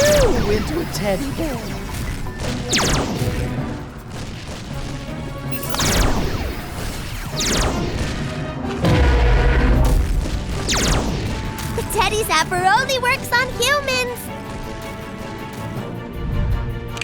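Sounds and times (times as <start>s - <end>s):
background music: 0.0s - 17.0s
low boom: 7.5s - 11.8s.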